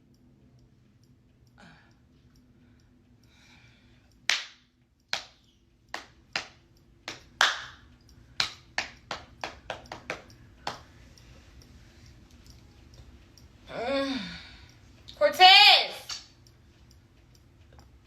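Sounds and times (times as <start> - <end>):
hand claps: 4.3 - 10.9.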